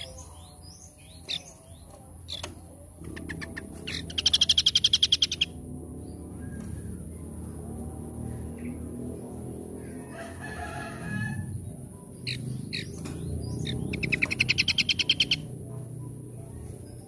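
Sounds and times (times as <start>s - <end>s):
birds singing: 0.0s - 17.0s
fast bird trill: 3.1s - 5.6s, 12.2s - 15.6s.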